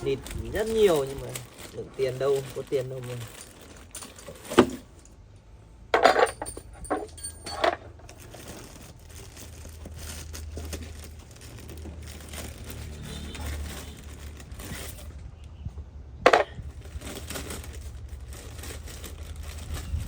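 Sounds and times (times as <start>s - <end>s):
low steady hum: 0.0s - 12.3s
metallic knocks and clinks: 6.0s - 8.0s.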